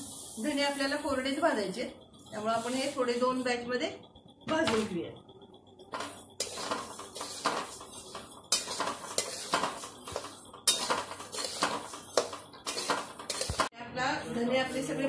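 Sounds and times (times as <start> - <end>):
seeds rattling in metal pan: 5.9 - 13.7.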